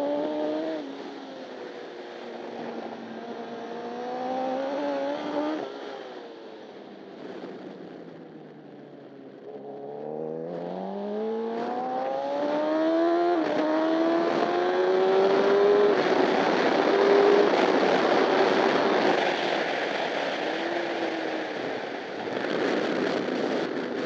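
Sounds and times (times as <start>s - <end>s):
motorcycle engine accelerating: 0.0s - 1.0s, 2.5s - 24.0s
wind rush: 11.6s - 24.0s.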